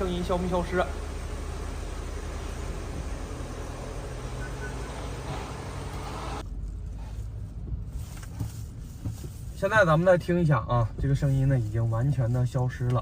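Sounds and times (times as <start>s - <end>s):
low hum: 0.0s - 7.8s
road and tyre noise: 0.0s - 13.0s.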